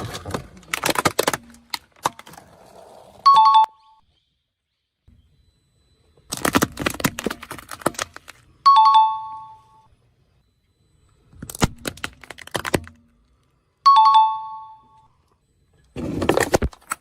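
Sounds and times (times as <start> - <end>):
brittle objects crushed under tyre: 0.0 - 2.4, 6.3 - 8.5, 11.4 - 13.2.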